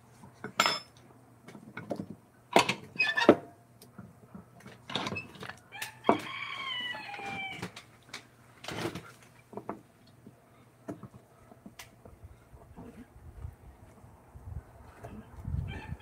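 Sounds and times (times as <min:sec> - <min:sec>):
rooster crowing: 0:05.7 - 0:07.7, 0:15.7 - 0:16.0.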